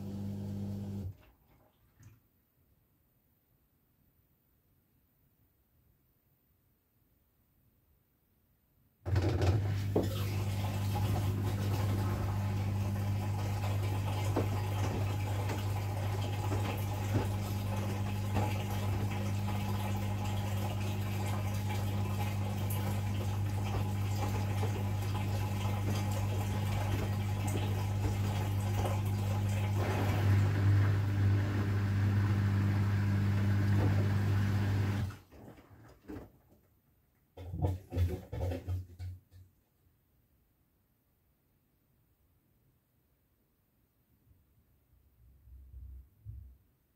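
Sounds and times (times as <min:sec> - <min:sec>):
washing machine hum: 0:00.0 - 0:02.2, 0:09.1 - 0:36.7, 0:37.4 - 0:39.3.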